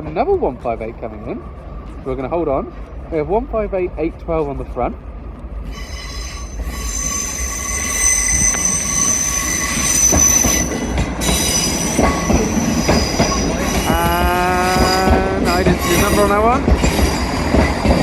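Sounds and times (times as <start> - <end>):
train low rumble: 0.0 - 18.0
train wheels squealing on rails: 5.6 - 18.0.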